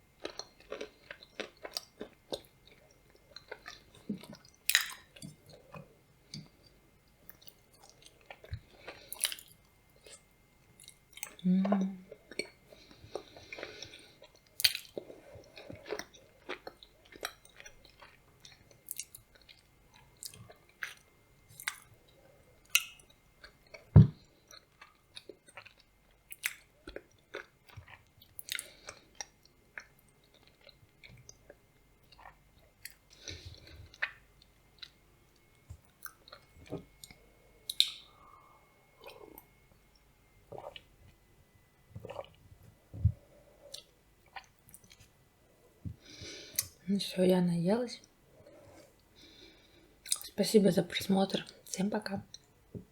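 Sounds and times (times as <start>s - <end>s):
close-up chewing with crunches: 0.2s - 11.5s, 12.1s - 42.4s.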